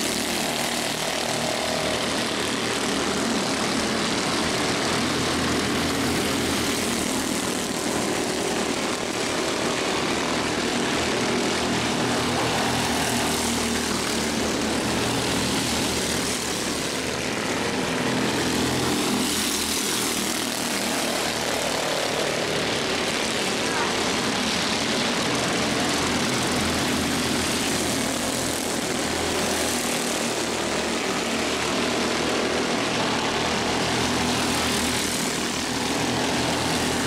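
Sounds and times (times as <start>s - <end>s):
race car engines droning: 0.0s - 37.0s.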